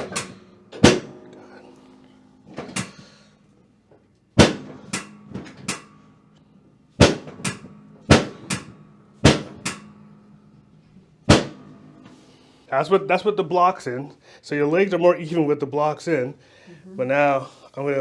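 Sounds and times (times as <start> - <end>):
table sections snapping down: 0.0 - 1.4, 2.5 - 3.2, 7.0 - 10.0.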